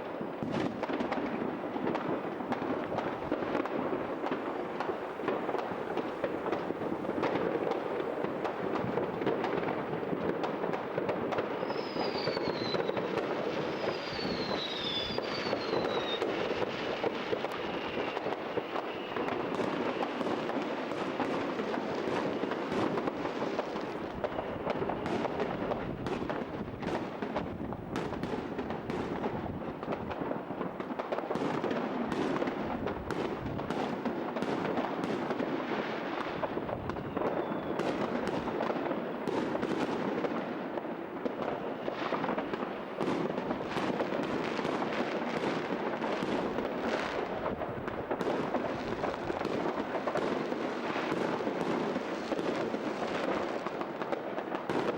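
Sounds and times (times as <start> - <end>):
fireworks banging and crackling: 0.0 - 54.9.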